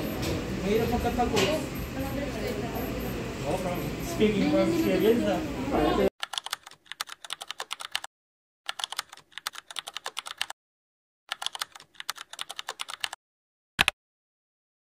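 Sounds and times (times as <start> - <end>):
typing on computer keyboard: 6.2 - 8.1, 8.7 - 10.5, 11.3 - 13.2.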